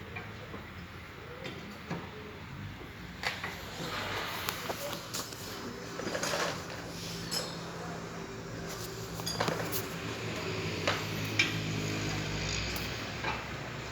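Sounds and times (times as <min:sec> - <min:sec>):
metal tools clinking: 0:06.0 - 0:07.8, 0:08.8 - 0:10.0.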